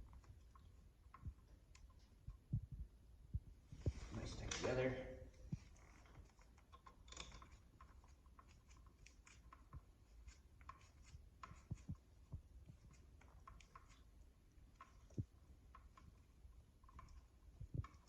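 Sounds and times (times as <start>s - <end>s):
wires clicking and scraping: 3.7s - 18.0s.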